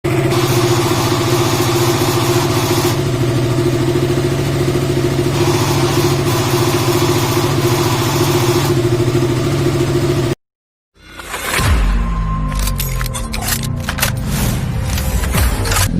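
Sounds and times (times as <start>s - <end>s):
harsh engine noise: 0.0s - 10.4s
motorcycle engine running: 0.0s - 10.4s.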